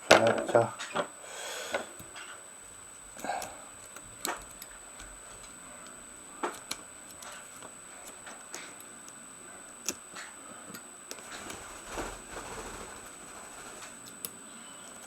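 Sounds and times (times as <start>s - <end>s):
screwdriver clicks and taps: 3.9s - 5.6s, 6.4s - 9.2s.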